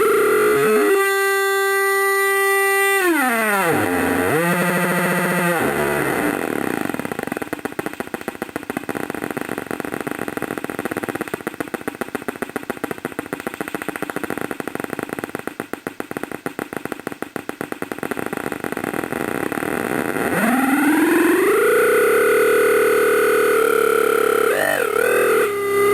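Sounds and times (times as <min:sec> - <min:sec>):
pulsing electronic buzz: 0:00.0 - 0:02.2, 0:02.8 - 0:07.4, 0:18.7 - 0:25.9.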